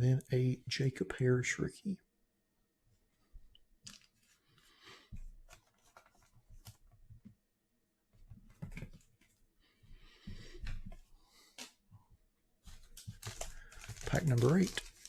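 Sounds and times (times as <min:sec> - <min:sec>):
cards being shuffled: 0:03.9 - 0:04.4, 0:05.2 - 0:06.8, 0:12.6 - 0:15.0.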